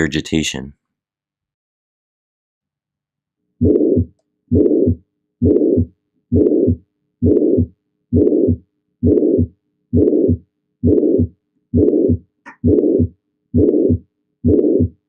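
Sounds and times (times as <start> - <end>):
heartbeat with blowing murmur: 3.6 - 15.0.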